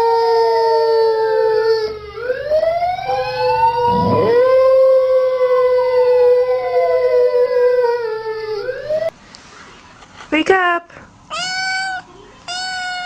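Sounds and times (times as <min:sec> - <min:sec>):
dogs howling: 0:03.8 - 0:08.6.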